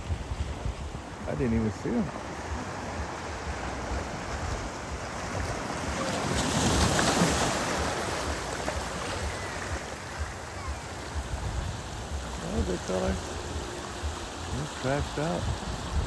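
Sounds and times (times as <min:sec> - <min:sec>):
ocean surf breaking: 0:00.0 - 0:16.0
wind buffeting microphone: 0:00.0 - 0:16.0.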